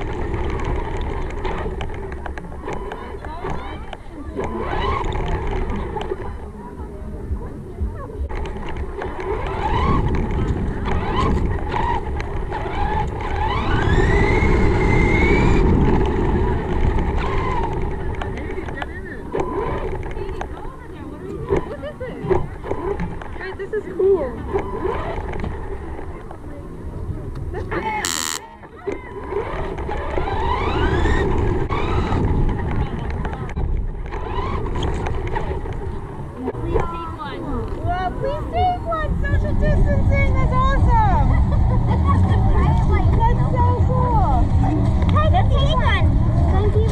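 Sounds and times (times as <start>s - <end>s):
electric motor whining: 28.0s - 28.4s.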